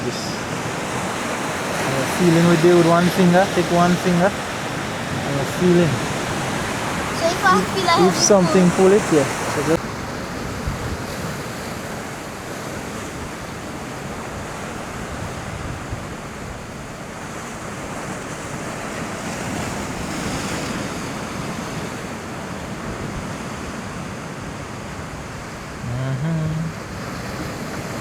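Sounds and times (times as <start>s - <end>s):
ocean waves washing against rocks: 0.0s - 28.0s
wind on microphone: 4.4s - 24.0s.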